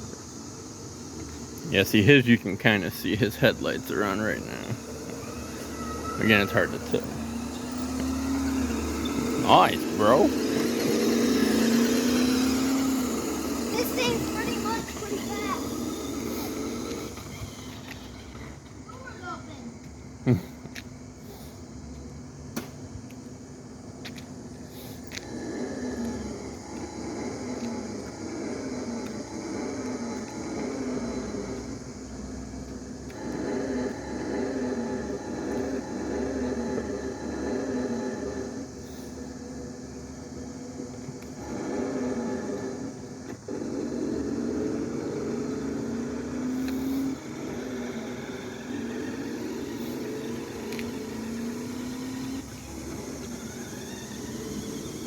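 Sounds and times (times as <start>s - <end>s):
toy car motor whirring: 1.0s - 19.7s, 24.7s - 55.0s.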